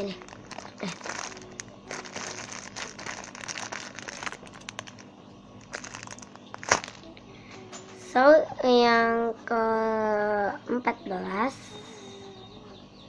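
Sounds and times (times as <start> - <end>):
squishy toys crinkling and rustling: 0.0 - 7.1.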